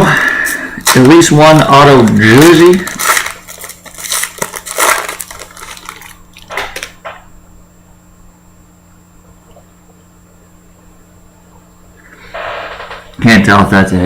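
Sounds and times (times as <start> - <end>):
low steady hum: 0.0 - 14.0
trading cards rustling and clicking: 1.7 - 7.0.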